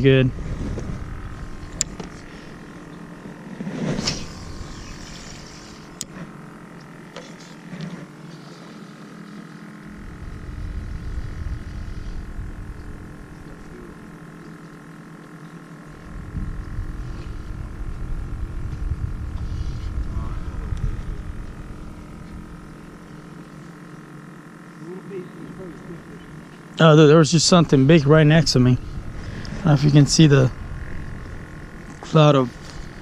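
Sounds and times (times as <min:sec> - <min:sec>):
wind buffeting microphone: 0:00.0 - 0:02.0, 0:10.0 - 0:14.0, 0:16.0 - 0:23.0, 0:28.1 - 0:32.1
distant engine hum: 0:00.0 - 0:33.0.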